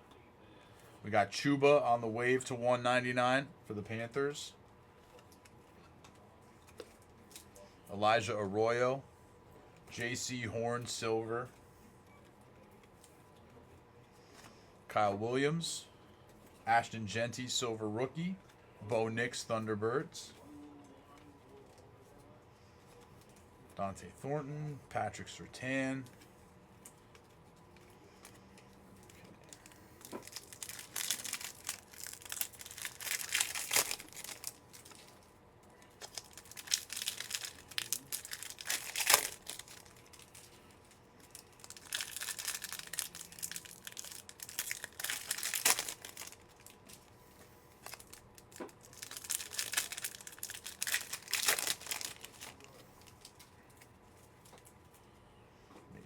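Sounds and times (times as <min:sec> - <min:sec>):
wrappers tearing and crinkling: 0:29.0 - 0:47.1, 0:47.7 - 0:53.5.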